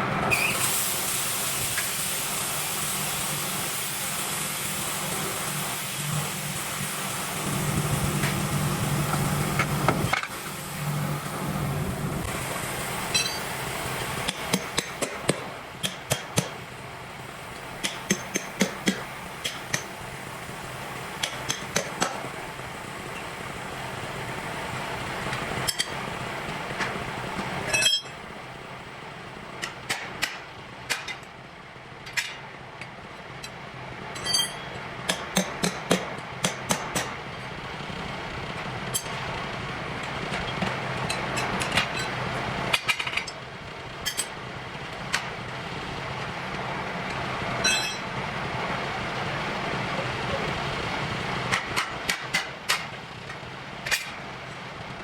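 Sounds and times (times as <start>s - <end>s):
steady machine drone: 1.3s - 55.0s
metal tools clinking on wheel: 13.1s - 13.5s, 27.7s - 28.2s, 34.2s - 34.8s, 47.6s - 48.1s.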